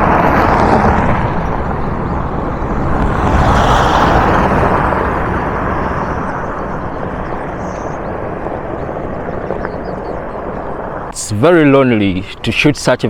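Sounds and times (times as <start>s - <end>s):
vehicle passing on dirt road: 0.0s - 9.3s.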